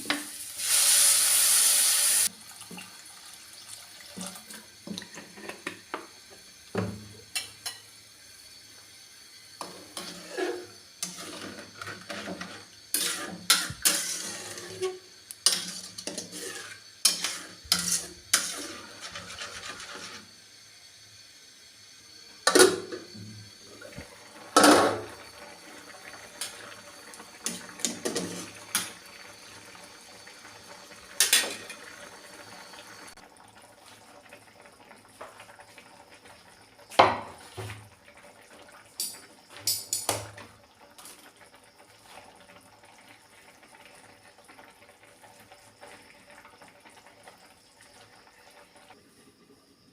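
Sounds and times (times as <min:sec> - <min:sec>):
pots and dishes clattering: 0:09.6 - 0:20.2, 0:22.4 - 0:23.1, 0:24.5 - 0:25.2, 0:27.4 - 0:29.0, 0:31.2 - 0:31.8.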